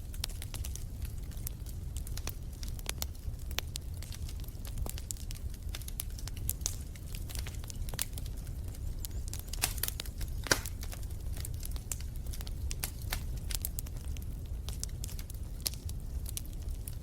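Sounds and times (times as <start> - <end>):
fire popping: 0.0 - 17.0
wood fire crackling: 0.0 - 17.0.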